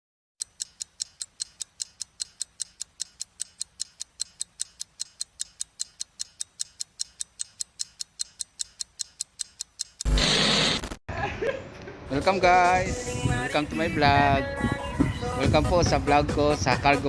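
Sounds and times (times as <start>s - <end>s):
fast even ticking: 0.4s - 10.1s.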